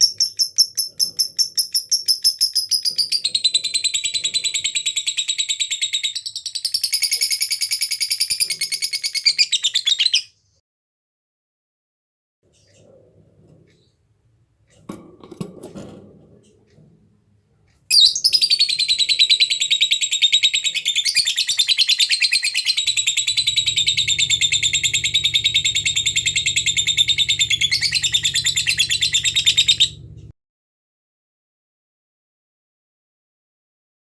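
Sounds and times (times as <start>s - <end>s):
lovebird chattering trill: 17.9s - 30.1s.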